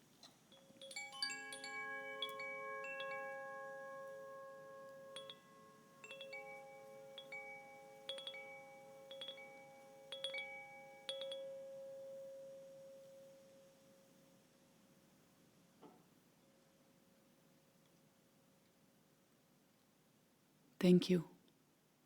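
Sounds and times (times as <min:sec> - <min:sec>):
tuned chimes ringing: 0:00.5 - 0:13.6.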